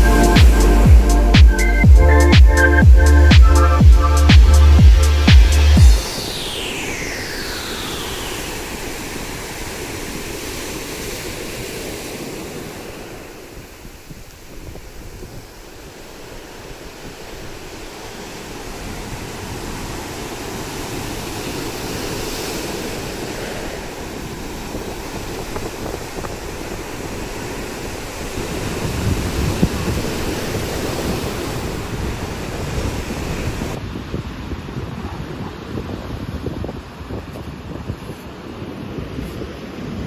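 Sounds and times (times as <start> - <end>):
heavy surf breaking on shore: 3.2 - 40.0
wind buffeting microphone: 20.8 - 40.0.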